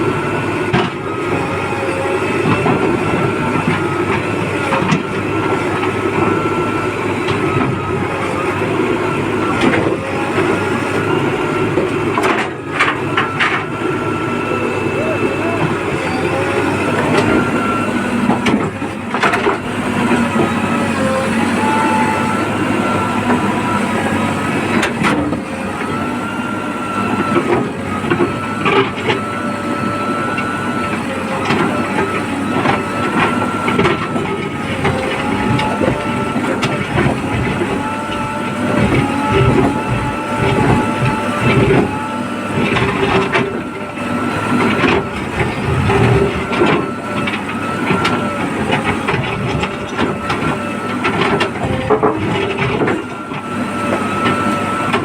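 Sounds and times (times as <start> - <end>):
diesel engine under load: 0.0 - 55.0
hydraulic whine: 0.0 - 55.0
digging knocks and clatter: 15.6 - 55.0.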